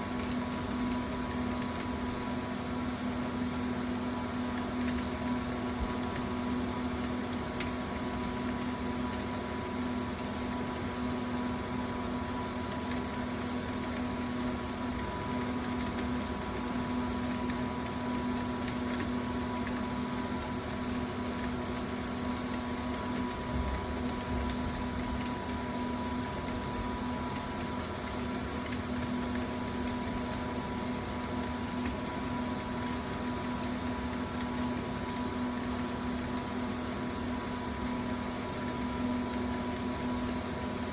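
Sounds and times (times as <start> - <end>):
steady mechanical hum: 0.0 - 40.9.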